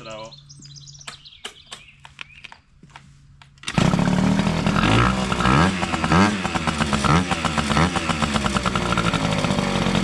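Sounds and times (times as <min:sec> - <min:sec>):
scooter engine revving: 0:03.7 - 0:10.0.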